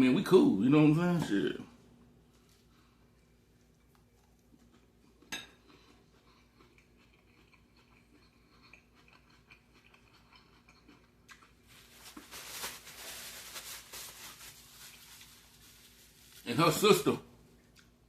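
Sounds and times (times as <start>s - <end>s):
person chewing food: 2.3s - 12.3s, 17.5s - 18.0s
crisp crunching: 11.4s - 17.0s.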